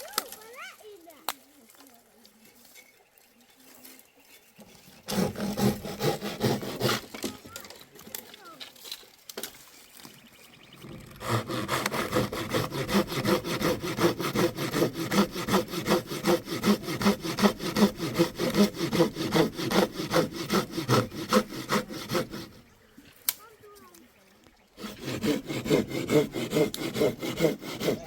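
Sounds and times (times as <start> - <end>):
sawing strokes: 3.8 - 7.8, 10.8 - 22.6, 24.8 - 28.0.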